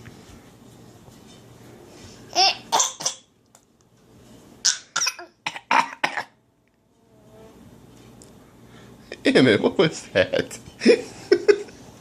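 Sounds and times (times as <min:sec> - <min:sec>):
child fake-coughing: 0:02.4 - 0:03.3, 0:04.7 - 0:06.4.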